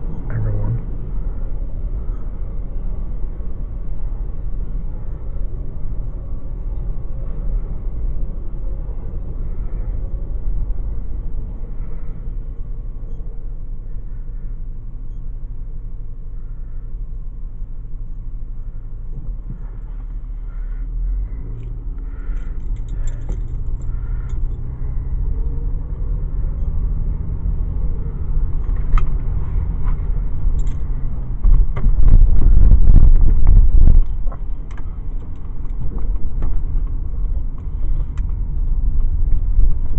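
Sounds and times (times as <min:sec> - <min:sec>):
car engine: 0:00.0 - 0:39.9
road rumble: 0:00.0 - 0:39.9.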